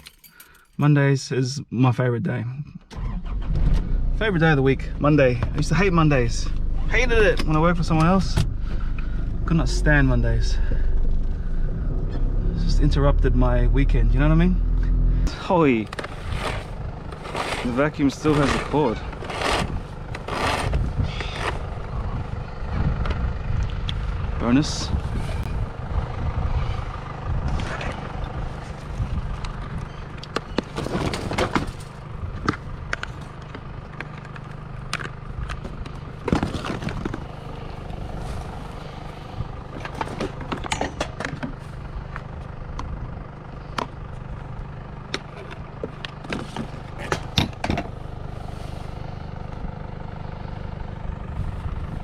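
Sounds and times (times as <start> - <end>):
low engine hum: 2.6 - 52.0
junk being rummaged through: 15.7 - 21.7, 30.3 - 38.6, 39.5 - 41.8, 45.3 - 47.9.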